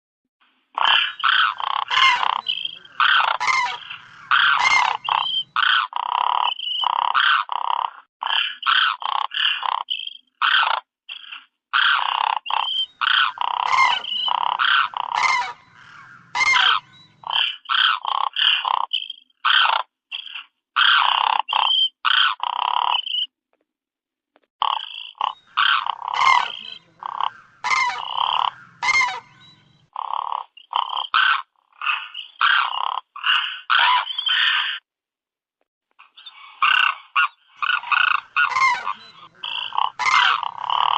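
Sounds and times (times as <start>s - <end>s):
cranes calling: 0.8s - 7.6s, 11.2s - 18.6s, 24.6s - 29.9s, 30.7s - 34.8s, 36.4s - 40.9s.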